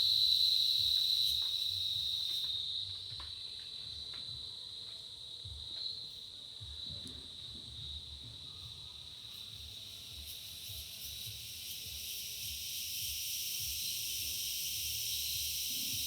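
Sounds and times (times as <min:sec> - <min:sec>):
insects trilling: 0:00.0 - 0:16.0
pulsing insect chorus: 0:00.0 - 0:16.0.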